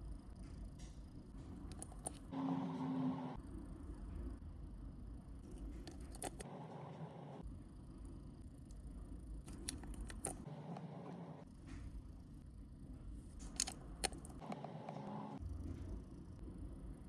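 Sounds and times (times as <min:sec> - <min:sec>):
watch parts clicking: 0:01.7 - 0:02.3, 0:05.6 - 0:06.4, 0:09.5 - 0:10.4, 0:13.4 - 0:14.5.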